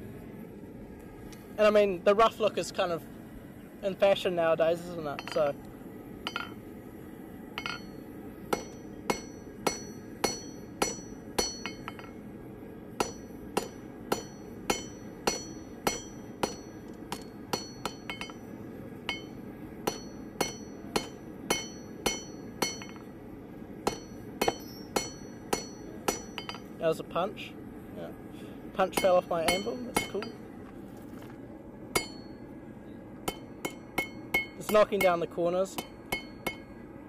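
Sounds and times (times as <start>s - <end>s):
hammer striking steel on anvil: 5.2s - 5.6s, 6.2s - 6.6s, 7.6s - 12.2s, 13.0s - 18.5s, 19.1s - 23.1s, 23.8s - 26.8s, 28.8s - 30.5s, 32.0s - 32.5s, 33.2s - 36.8s.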